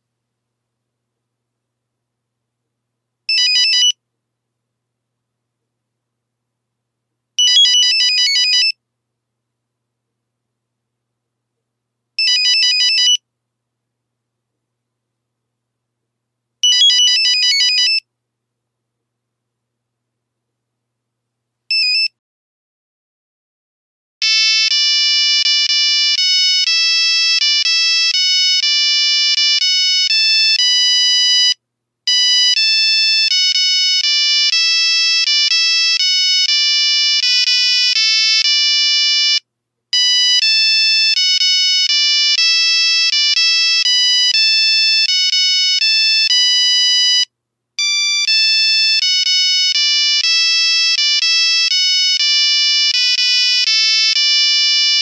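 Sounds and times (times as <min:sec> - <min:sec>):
buzzy phone ringtone melody: 0:24.2 - 0:39.4, 0:40.0 - 0:55.0.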